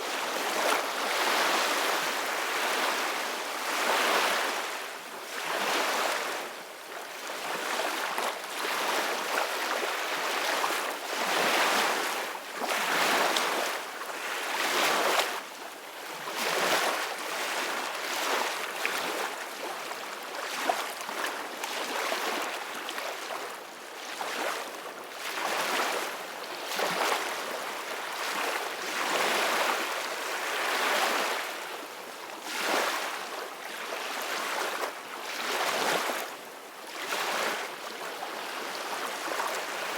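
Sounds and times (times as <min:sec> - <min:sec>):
ocean waves breaking on shore: 0:00.0 - 0:15.4, 0:16.3 - 0:39.9.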